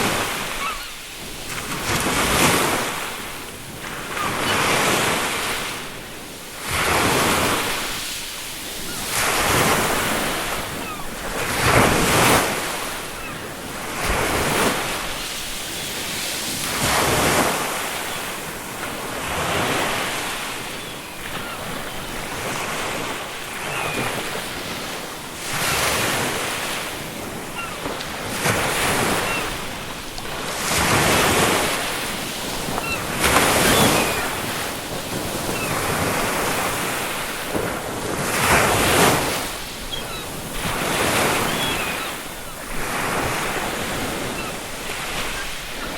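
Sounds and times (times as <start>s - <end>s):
ocean waves breaking on shore: 0.0s - 45.9s
faint seagull calls: 0.4s - 1.0s, 8.8s - 11.2s, 12.9s - 13.6s, 23.5s - 24.4s, 27.5s - 27.9s, 29.0s - 29.6s, 32.6s - 35.9s, 39.8s - 42.8s, 44.0s - 45.9s.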